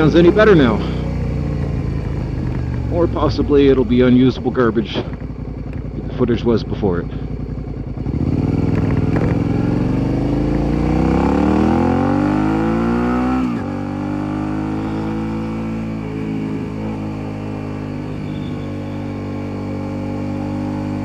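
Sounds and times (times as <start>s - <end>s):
motorcycle engine accelerating: 0.0s - 21.0s.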